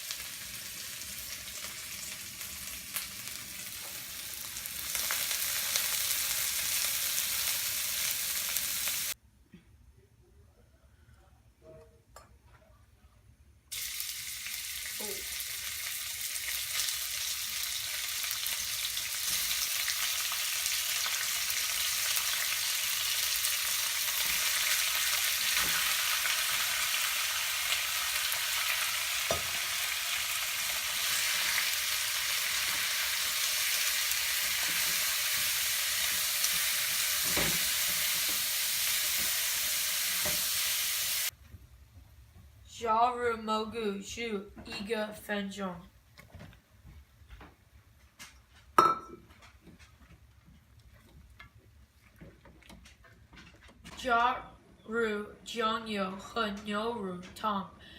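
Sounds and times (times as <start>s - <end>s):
food sizzling in hot oil: 0.0s - 9.2s, 13.7s - 41.3s.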